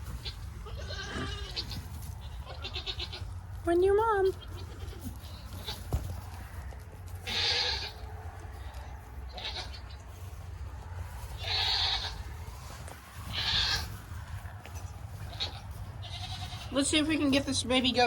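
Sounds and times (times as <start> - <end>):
goats bleating: 0.0 - 3.4, 4.3 - 6.0, 7.1 - 10.0, 11.2 - 12.4, 13.3 - 14.0, 15.1 - 16.8.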